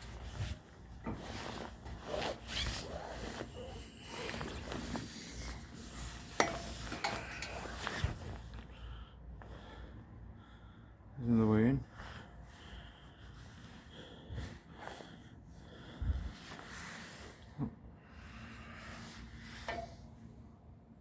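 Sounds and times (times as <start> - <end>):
rustling and scraping: 0.0 - 8.7.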